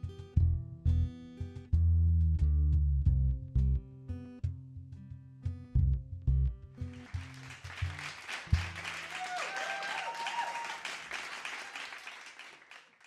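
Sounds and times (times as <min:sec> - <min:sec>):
audience applauding: 0:06.9 - 0:13.0
audience cheering: 0:07.0 - 0:13.0.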